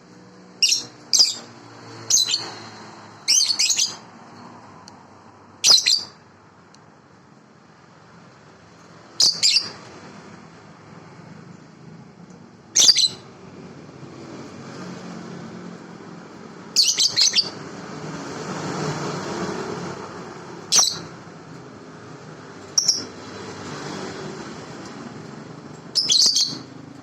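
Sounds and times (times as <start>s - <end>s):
bird chirping: 0.6s - 4.0s, 5.6s - 6.2s, 9.1s - 9.9s, 12.8s - 13.3s, 16.7s - 17.6s, 20.7s - 21.2s, 22.6s - 24.1s, 25.8s - 26.8s.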